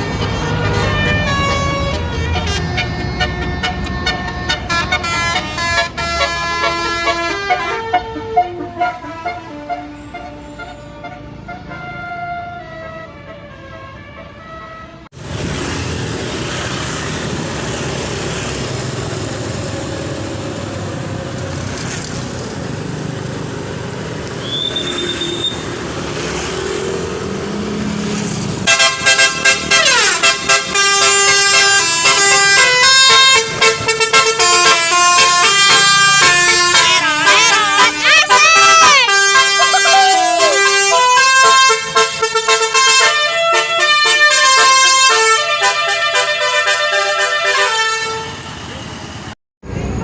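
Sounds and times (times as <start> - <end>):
bus air horn playing a tune: 0.0 - 15.1, 28.6 - 48.5
road traffic noise: 0.0 - 50.0.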